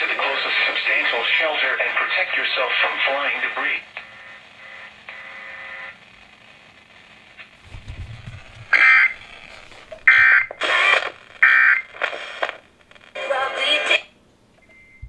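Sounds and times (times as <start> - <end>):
radio hiss: 0.0 - 14.2
harsh digital data buzzing bursts: 4.1 - 13.2.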